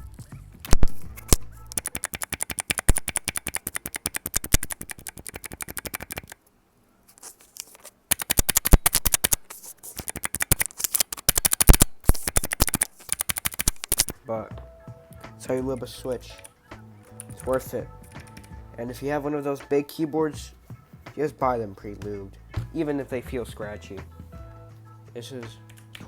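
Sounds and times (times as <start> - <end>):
mechanical keyboard keys clacking: 0.7 - 6.4, 7.6 - 14.2, 17.2 - 18.5.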